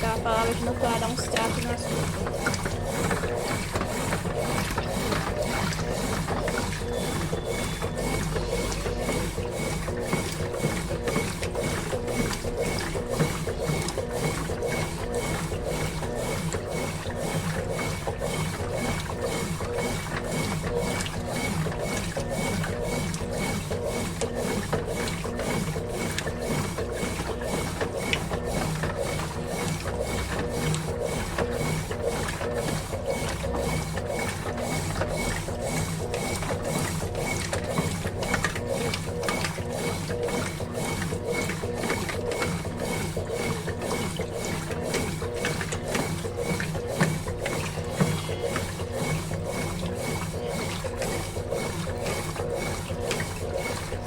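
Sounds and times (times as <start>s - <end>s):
washing machine churning: 0.0s - 54.0s.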